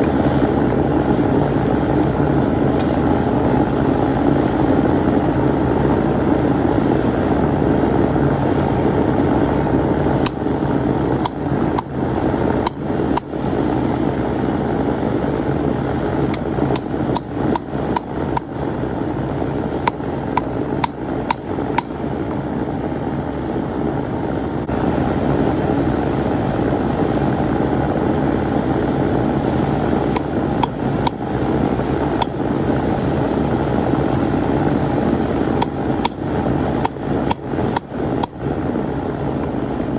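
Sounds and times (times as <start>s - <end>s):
steady rushing noise: 0.0s - 39.9s
hammer striking metal on anvil: 11.2s - 12.0s, 12.7s - 13.3s, 16.4s - 18.5s, 19.9s - 22.0s, 36.9s - 38.4s.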